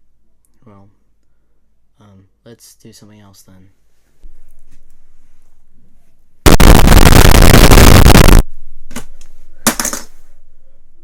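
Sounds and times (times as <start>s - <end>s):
harsh noise burst: 6.4s - 8.4s
short crackles: 6.5s - 8.4s.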